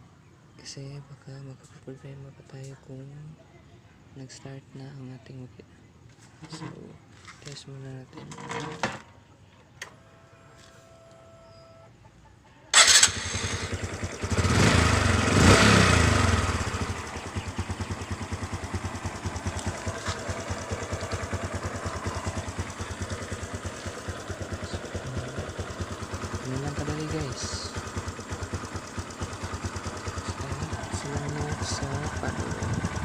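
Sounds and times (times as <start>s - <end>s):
motorcycle engine idling: 12.7s - 33.0s
motorcycle engine starting and revving: 12.7s - 33.0s.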